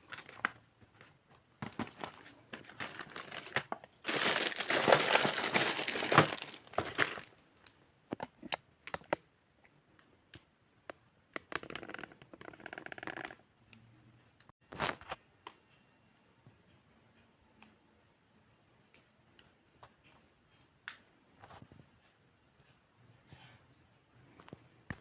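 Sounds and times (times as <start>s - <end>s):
plastic packaging crinkling: 1.6s - 7.4s.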